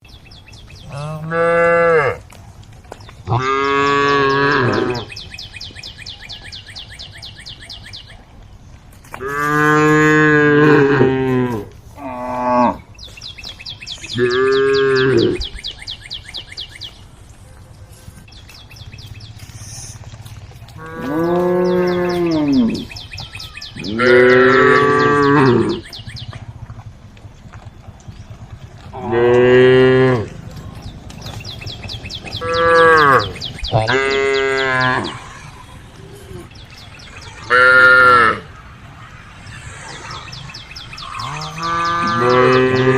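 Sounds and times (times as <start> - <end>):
cattle mooing: 0.8 - 2.2, 3.3 - 5.2, 9.2 - 12.9, 14.1 - 15.5, 20.8 - 23.0, 23.8 - 26.0, 28.8 - 31.2, 32.2 - 36.5, 37.3 - 38.5, 39.7 - 42.9.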